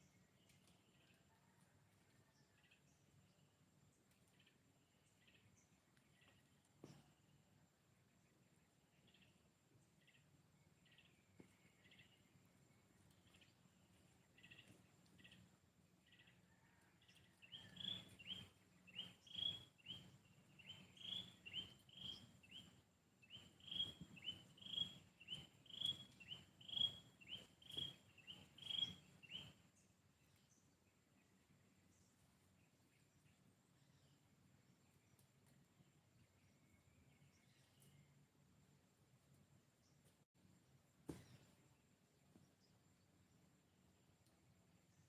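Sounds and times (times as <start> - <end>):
bird chirping: 8.1 - 34.2.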